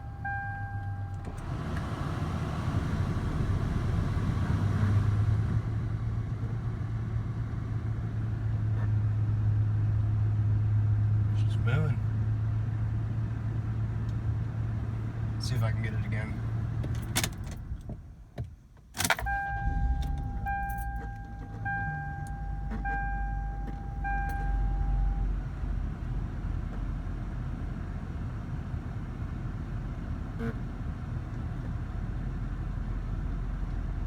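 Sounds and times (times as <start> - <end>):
car engine hum: 0.0 - 34.0
pulsing high tone: 19.2 - 25.3.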